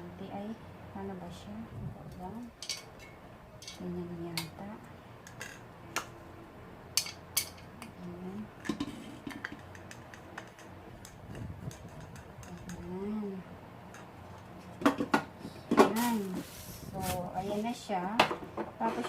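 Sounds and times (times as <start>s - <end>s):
clicks of grill parts handled: 2.5s - 3.8s.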